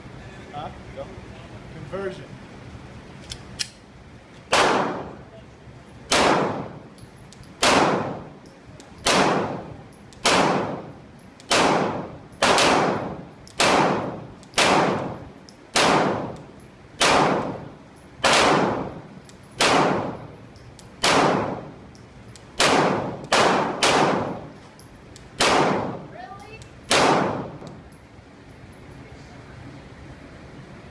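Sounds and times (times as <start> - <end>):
pistol shots: 4.5 - 5.2, 6.1 - 6.8, 7.6 - 8.3, 9.0 - 16.4, 17.0 - 20.3, 21.0 - 21.8, 22.6 - 24.5, 25.4 - 26.1, 26.9 - 27.7.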